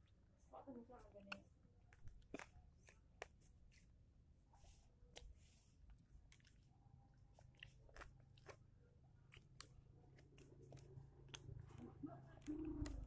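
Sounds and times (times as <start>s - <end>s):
faint chewing: 1.0s - 13.0s
mouth clicks: 10.3s - 13.0s.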